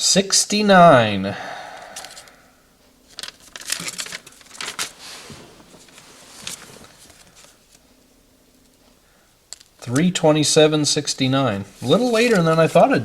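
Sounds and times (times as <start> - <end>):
paper crinkling and rustling: 3.2 - 5.3, 5.9 - 7.6.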